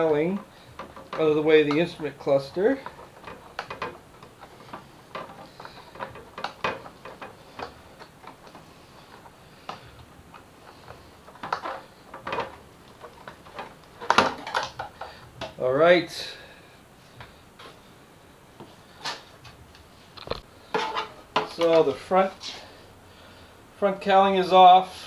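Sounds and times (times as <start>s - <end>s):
plastic fairing clicking and knocking: 0.0s - 15.6s.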